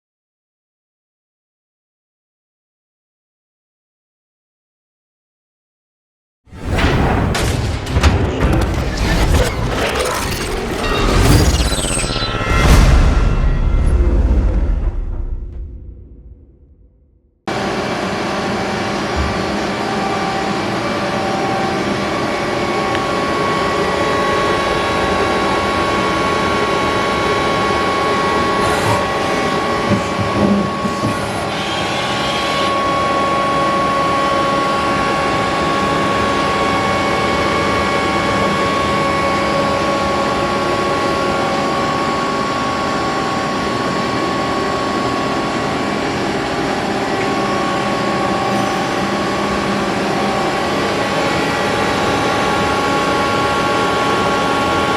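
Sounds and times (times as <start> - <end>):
mechanical knocks: 6.6 - 12.8
lathe mechanical hum: 17.5 - 54.9.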